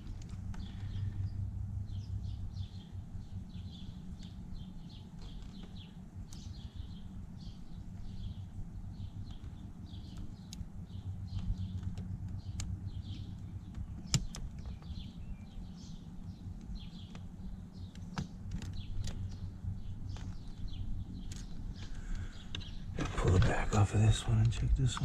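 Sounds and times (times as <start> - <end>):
birds chirping: 0.0 - 25.0
steady low hum: 0.0 - 25.0.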